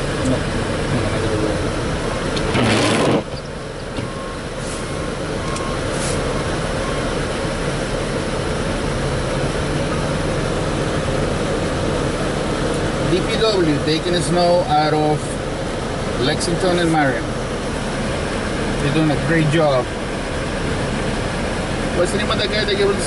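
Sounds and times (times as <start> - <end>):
snow-removal machinery engine drone: 0.0 - 23.0.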